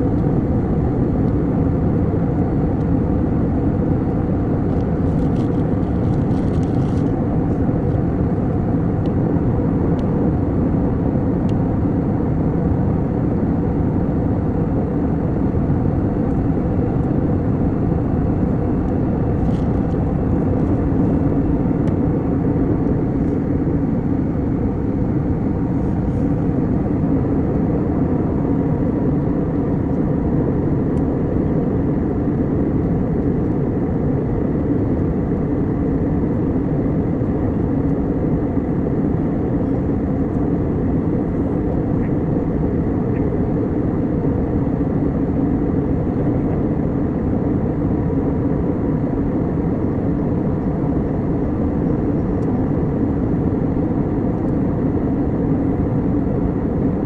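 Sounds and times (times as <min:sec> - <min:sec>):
jet engines droning: 0:00.0 - 0:57.0.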